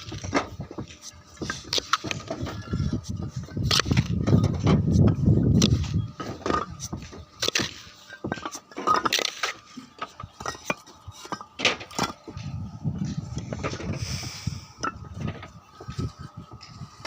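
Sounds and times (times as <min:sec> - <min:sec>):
roof tiles and tools clinking: 0:00.0 - 0:17.0.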